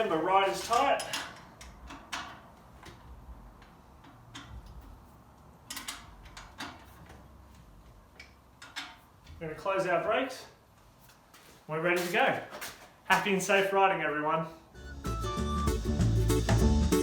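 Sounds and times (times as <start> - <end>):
light clicks and metal taps: 0.7 - 5.0, 5.6 - 9.4.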